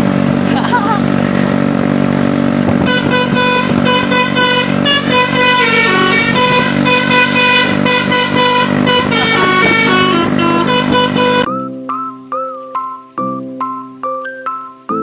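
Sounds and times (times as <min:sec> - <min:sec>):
bus engine idling: 0:00.0 - 0:11.5
musical air horn melody: 0:02.7 - 0:11.6.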